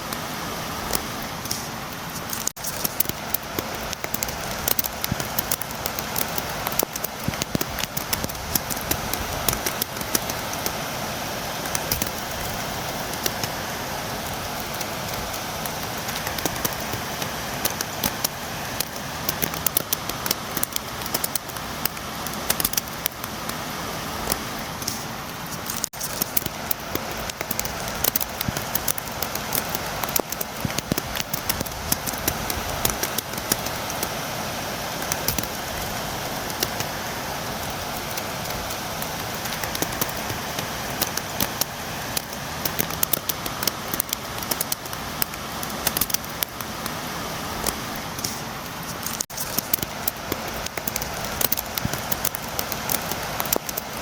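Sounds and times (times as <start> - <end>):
steady rain: 0.0 - 54.0
raindrops tapping on window: 2.3 - 10.8, 24.3 - 34.2.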